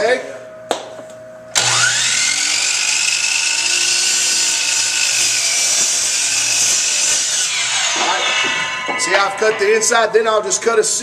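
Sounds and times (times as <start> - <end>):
power saw motor whine: 1.5 - 9.8.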